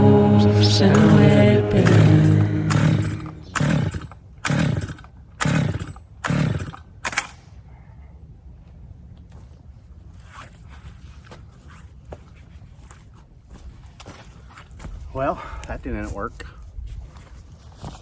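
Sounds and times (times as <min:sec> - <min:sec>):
engine turning over: 0:00.7 - 0:07.3
chainsaw recoil starter pulls: 0:01.8 - 0:07.3.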